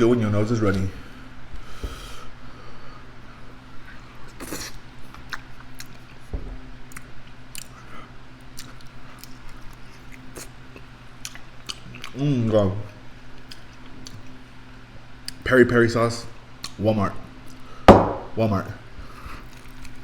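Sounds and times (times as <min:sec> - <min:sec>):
person chewing food: 0:03.7 - 0:12.2, 0:13.3 - 0:14.5, 0:19.0 - 0:20.0.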